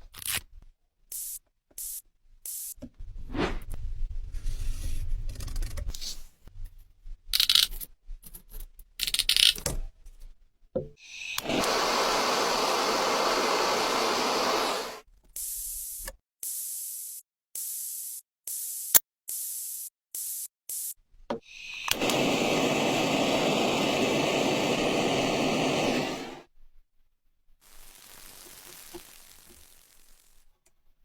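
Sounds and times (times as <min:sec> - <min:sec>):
steady hiss: 0:11.1 - 0:15.0, 0:21.5 - 0:26.5, 0:27.6 - 0:30.6.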